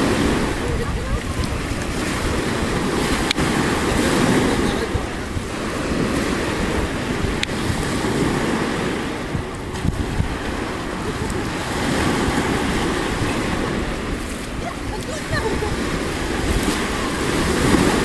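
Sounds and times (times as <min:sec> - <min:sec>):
surf washing onto pebble beach: 0:00.0 - 0:18.0
wind buffeting microphone: 0:00.0 - 0:18.0
faint sharp clicks: 0:03.2 - 0:03.4, 0:07.4 - 0:07.6.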